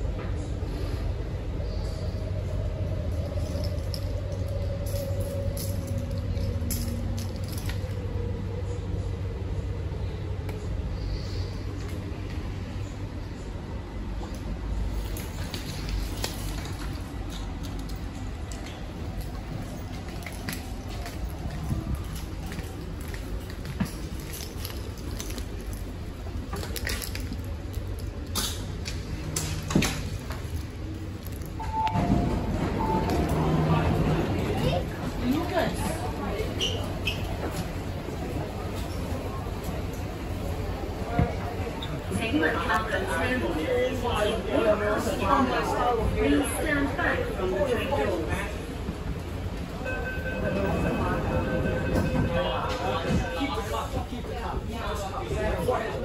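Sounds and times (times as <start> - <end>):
train carriage rumble: 0.0 - 56.0.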